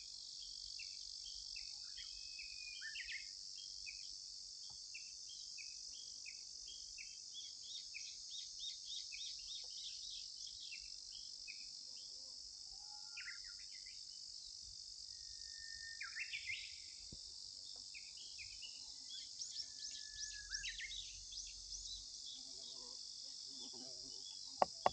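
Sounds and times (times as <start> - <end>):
high-pitched insect chorus: 12.9 - 24.9
whistled bird notes: 15.2 - 16.8
small birds chirping: 23.7 - 24.9.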